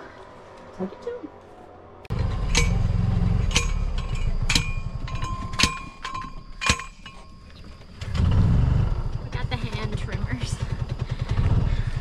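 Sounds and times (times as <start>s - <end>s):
small vehicle engine: 0.0s - 12.0s
sharp clink: 2.1s - 7.9s.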